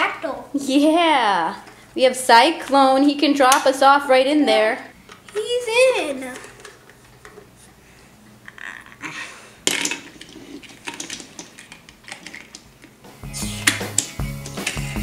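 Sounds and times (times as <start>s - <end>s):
plastic toy pieces clattering: 6.2s - 7.4s, 9.6s - 12.7s
music: 13.0s - 15.0s.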